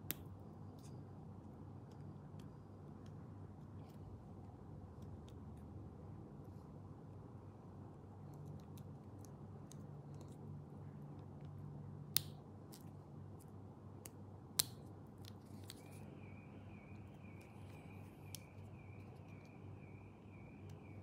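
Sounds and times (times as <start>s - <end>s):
faint hum: 0.0s - 21.0s
faint pulsing high tone: 15.8s - 21.0s.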